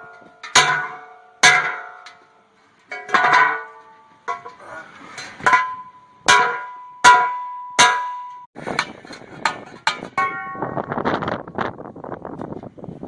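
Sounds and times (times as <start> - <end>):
hammer striking steel: 0.0 - 4.6, 5.2 - 10.8.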